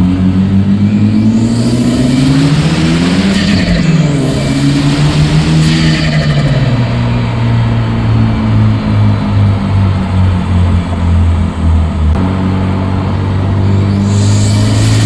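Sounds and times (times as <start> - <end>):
car engine revving: 0.0 - 15.0
turbo whistle: 13.8 - 15.0.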